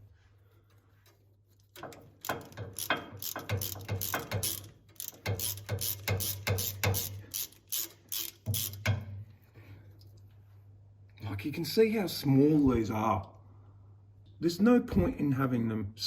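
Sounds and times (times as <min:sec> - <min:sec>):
ratchet clicking: 0:01.6 - 0:09.1.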